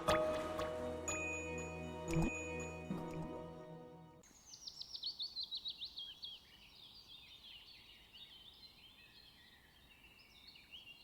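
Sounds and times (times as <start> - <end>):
songbirds singing: 4.2 - 11.0.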